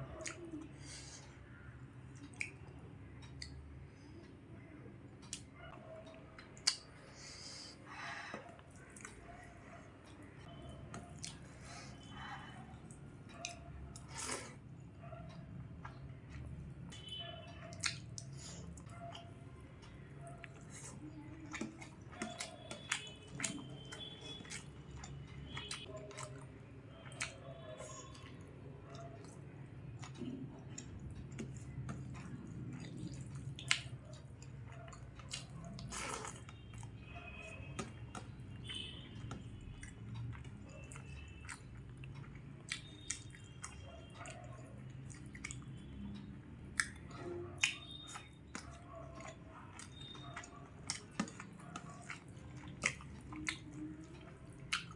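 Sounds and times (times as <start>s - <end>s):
person chewing food: 0.1s - 4.3s, 5.2s - 54.9s
wet mouth smacks and clicks: 46.8s - 47.0s.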